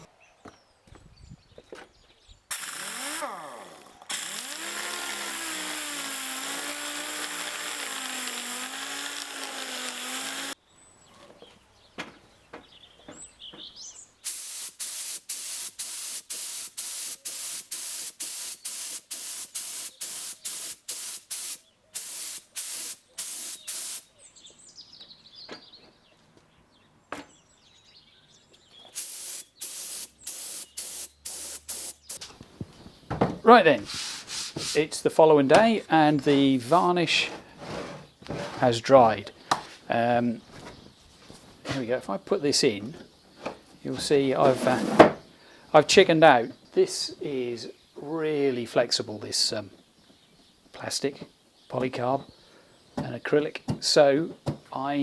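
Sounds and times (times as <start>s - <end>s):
power tool motor running: 2.5s - 10.6s, 29.0s - 32.2s
rasping hand-tool strokes: 2.5s - 10.6s.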